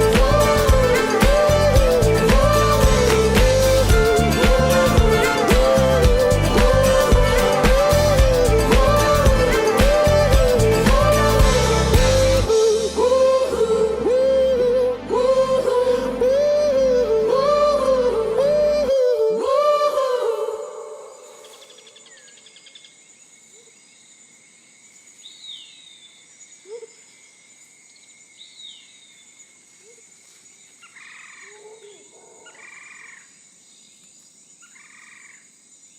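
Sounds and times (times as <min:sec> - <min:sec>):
person singing a song: 0:00.0 - 0:21.6
frogs croaking: 0:20.8 - 0:35.9.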